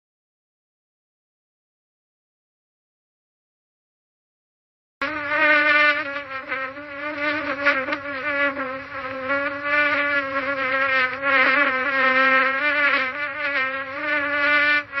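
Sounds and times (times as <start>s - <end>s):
fly buzzing: 5.0s - 15.0s.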